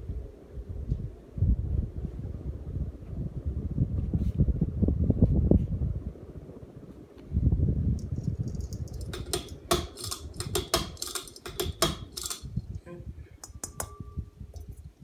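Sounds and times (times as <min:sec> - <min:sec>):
rumble of moving air: 0:00.0 - 0:10.5
ceiling fan clicking: 0:07.9 - 0:15.0.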